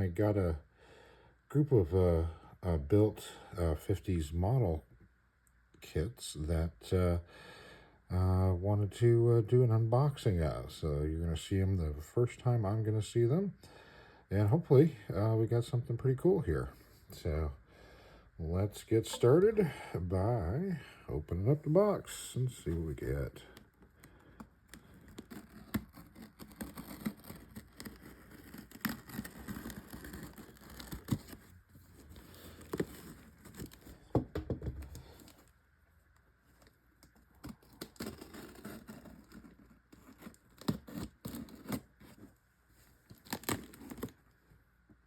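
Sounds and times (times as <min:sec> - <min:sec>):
packing tearing and rustling: 0:23.0 - 0:34.2, 0:36.5 - 0:44.4
box knocks and clicks: 0:34.1 - 0:35.0.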